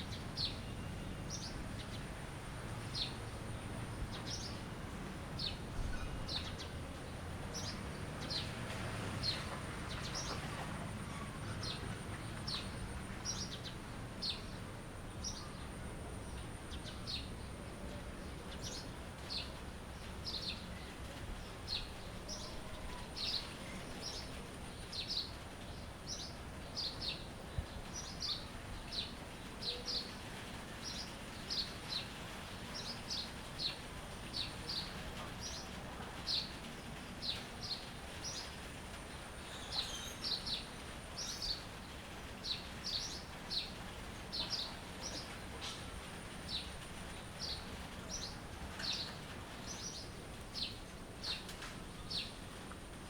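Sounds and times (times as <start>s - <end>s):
background hiss: 0.0s - 53.0s
songbird chirping: 5.3s - 52.9s.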